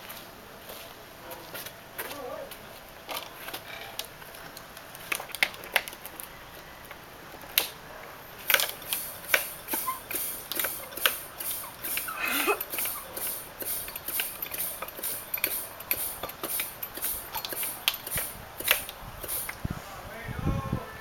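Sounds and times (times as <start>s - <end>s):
sharp mechanical clicks and knocks: 8.4s - 19.6s.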